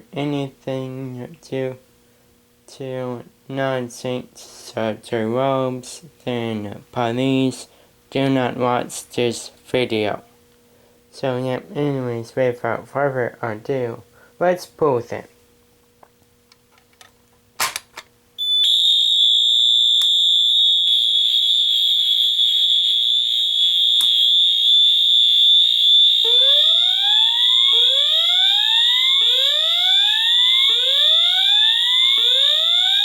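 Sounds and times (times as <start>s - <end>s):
fire alarm horn tone: 18.4s - 33.0s
rising whoop siren: 20.6s - 33.0s.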